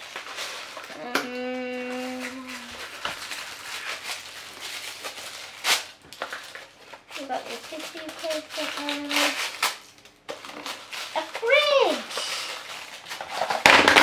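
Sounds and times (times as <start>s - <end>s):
tissue paper rustling and crinkling: 0.0s - 14.0s.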